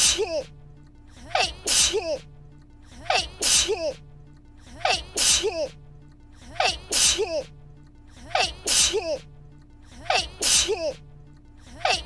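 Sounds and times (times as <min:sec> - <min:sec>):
person sneezing: 0:01.4 - 0:02.2, 0:03.1 - 0:04.0, 0:04.8 - 0:05.8, 0:06.6 - 0:07.5, 0:08.4 - 0:09.2, 0:10.1 - 0:11.0.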